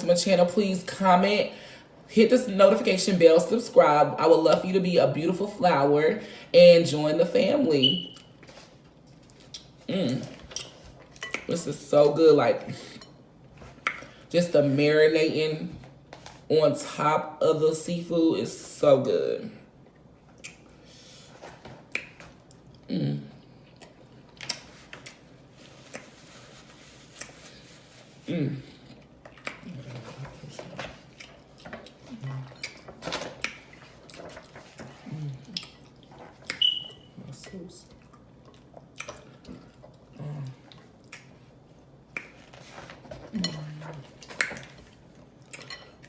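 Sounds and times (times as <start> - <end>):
wet chewing and lip smacking: 19.9 - 20.8, 28.9 - 29.8, 31.0 - 37.0, 37.8 - 42.6
wet lip smacks and clicks: 20.4 - 20.7, 21.9 - 22.6, 38.0 - 40.0, 40.7 - 41.4, 42.1 - 42.5, 44.2 - 44.8.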